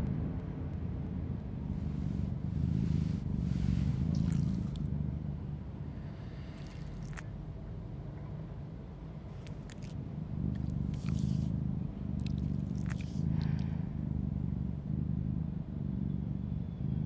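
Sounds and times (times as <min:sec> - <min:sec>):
cat purring: 0:01.7 - 0:04.9, 0:06.5 - 0:07.2, 0:09.3 - 0:16.2
faint wet licking clicks: 0:04.1 - 0:04.8, 0:06.5 - 0:07.2, 0:09.3 - 0:11.5, 0:12.2 - 0:13.8.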